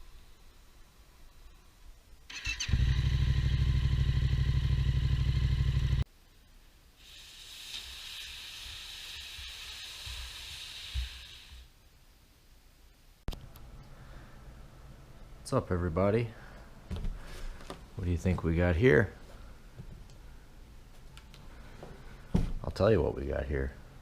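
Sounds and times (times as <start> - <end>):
steady hiss: 0.0 - 2.3, 6.1 - 14.6
motorcycle engine running: 2.5 - 6.0.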